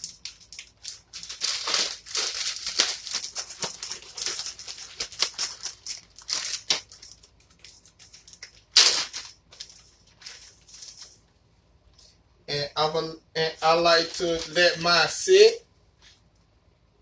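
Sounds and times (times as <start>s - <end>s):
bag crinkling and rustling: 0.0s - 11.2s, 13.9s - 14.8s.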